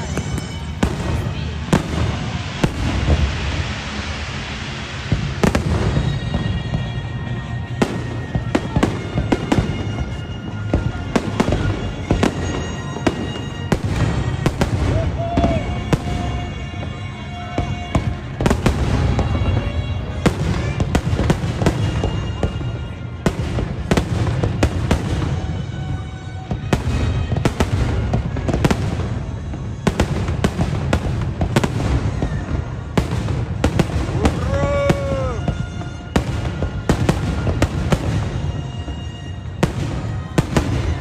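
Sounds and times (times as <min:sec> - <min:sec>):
low rumble: 0:00.0 - 0:09.2
fireworks bangs and crackles: 0:00.0 - 0:41.0.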